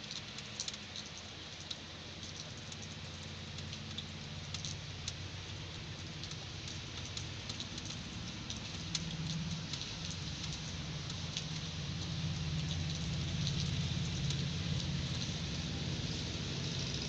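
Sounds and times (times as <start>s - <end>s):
heavy rain falling: 0.0s - 17.0s
raindrops ticking and pattering: 0.0s - 17.0s.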